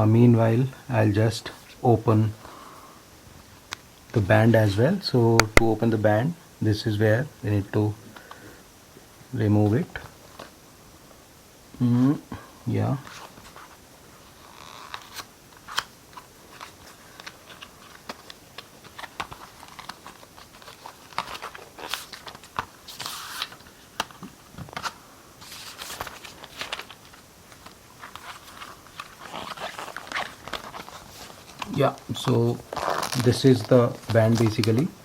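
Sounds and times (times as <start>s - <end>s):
wrapping rustling and crinkling: 12.7s - 35.0s.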